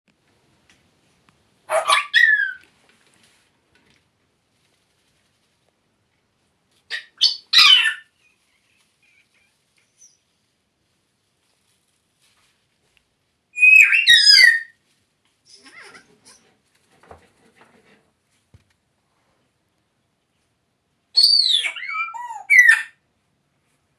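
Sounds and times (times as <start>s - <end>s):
parrot squawks: 1.7s - 2.6s, 6.9s - 8.2s, 13.6s - 14.8s, 21.2s - 23.0s
parrot gliding whistles: 13.6s - 14.8s.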